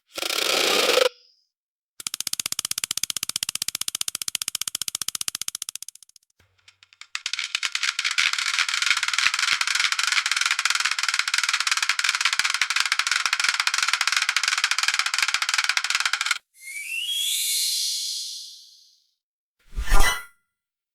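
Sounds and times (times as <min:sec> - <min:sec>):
pallet wrapper clicking chatter: 0:06.8 - 0:16.4.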